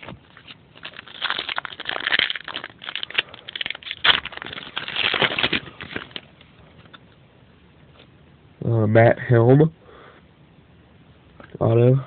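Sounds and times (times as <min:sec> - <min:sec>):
wrapper crinkling: 0:00.0 - 0:06.4.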